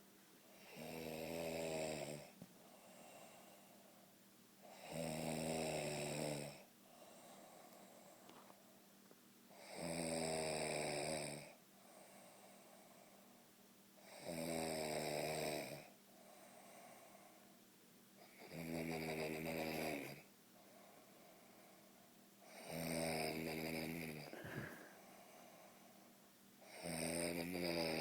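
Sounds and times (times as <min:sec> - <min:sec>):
man snoring: 0:00.6 - 0:02.4, 0:04.7 - 0:06.6, 0:09.6 - 0:11.6, 0:14.0 - 0:15.9, 0:18.4 - 0:20.2, 0:22.5 - 0:25.0, 0:26.7 - 0:28.0
soft breathing: 0:02.5 - 0:04.2, 0:06.8 - 0:08.8, 0:16.1 - 0:17.6, 0:20.5 - 0:22.2, 0:24.3 - 0:26.2.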